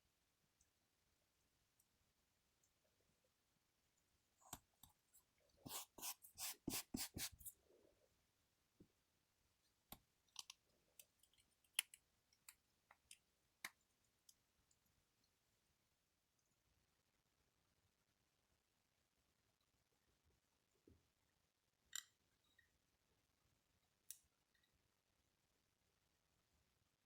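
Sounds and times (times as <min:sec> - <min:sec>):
small parts clicking and tapping: 0:09.9 - 0:14.8, 0:21.9 - 0:22.7.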